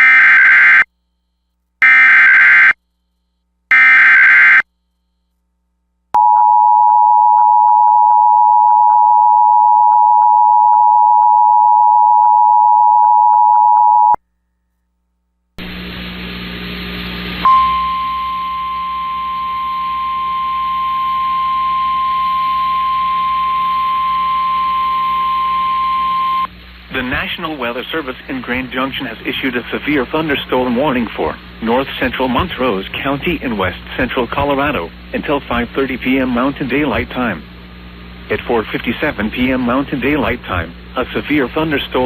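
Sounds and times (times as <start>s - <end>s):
screeching digital data header: 1.8s - 2.8s, 3.7s - 4.6s
hiss and hum: 15.6s - 42.0s
steady single tone: 17.3s - 26.5s
two-tone attention signal: 17.4s - 26.5s.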